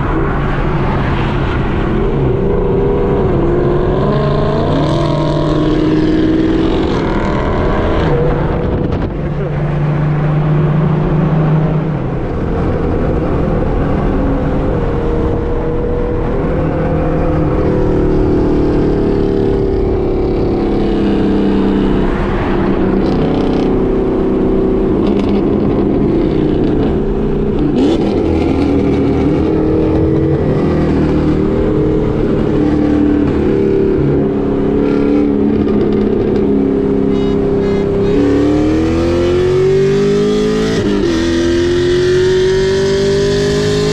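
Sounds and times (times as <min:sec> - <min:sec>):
car engine running hard: 0:00.0 - 0:43.9.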